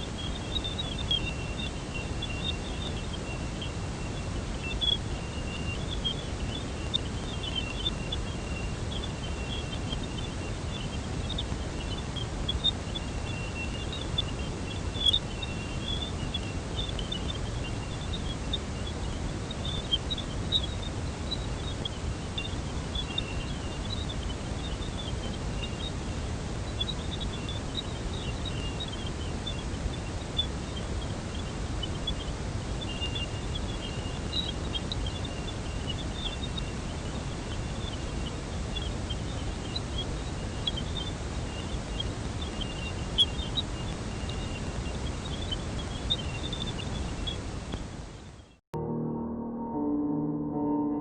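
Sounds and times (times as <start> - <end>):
steady hiss and low rumble: 0.0 - 48.6
high chirps and blips: 48.8 - 51.0
thin high tone: 48.8 - 51.0.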